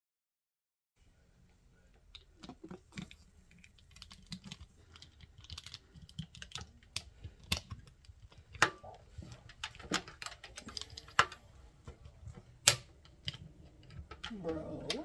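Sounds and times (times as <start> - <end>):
light clicks and taps: 1.5 - 15.0.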